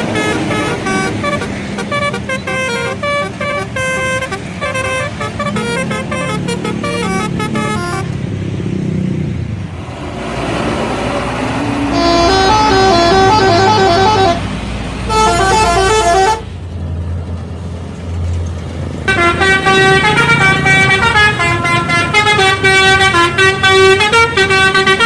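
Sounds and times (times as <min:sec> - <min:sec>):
melodic bus horn: 0:00.0 - 0:08.2, 0:11.6 - 0:16.6, 0:19.0 - 0:25.0
bus engine rumble: 0:00.0 - 0:25.0.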